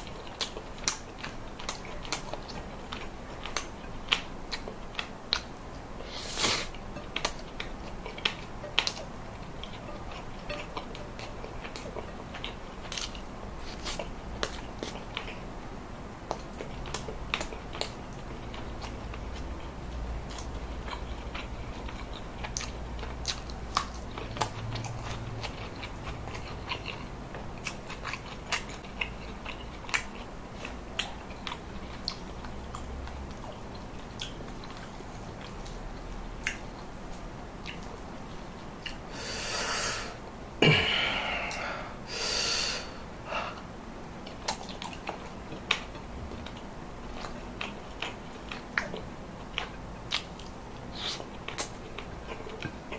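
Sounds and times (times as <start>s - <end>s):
close chewing and biting: 0.0s - 5.5s, 6.6s - 15.5s, 16.3s - 36.9s, 44.2s - 52.9s
breathy rushes: 39.1s - 43.6s.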